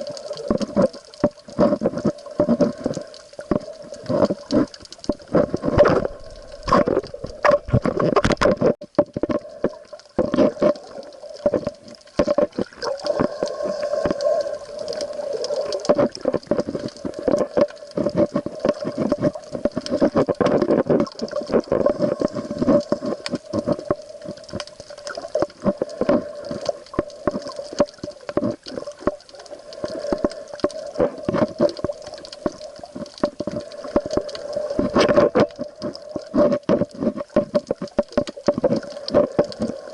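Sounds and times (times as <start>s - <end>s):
underwater crackling and knocks: 0.0s - 39.9s.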